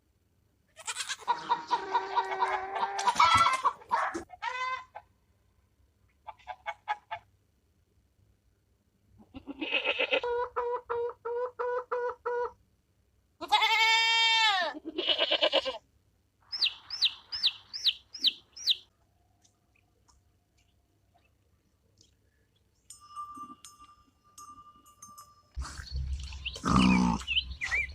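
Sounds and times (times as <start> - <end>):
farm animals calling: 0.8 - 5.0, 9.3 - 12.6, 13.4 - 15.8, 16.5 - 18.9, 25.6 - 27.9.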